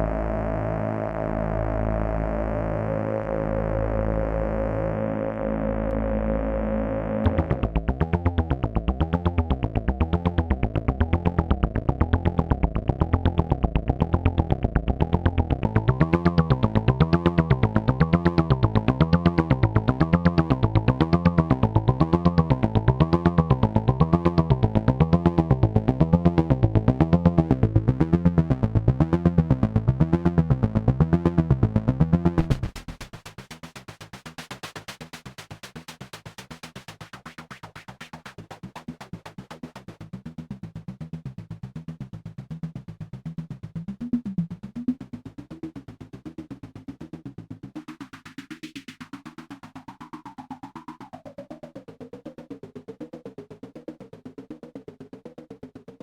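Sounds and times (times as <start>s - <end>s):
analog synthesizer pulse: 0.0s - 33.0s.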